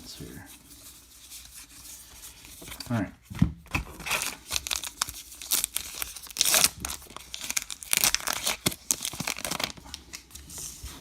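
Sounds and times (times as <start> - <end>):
wrapper tearing and crinkling: 3.7 - 10.2.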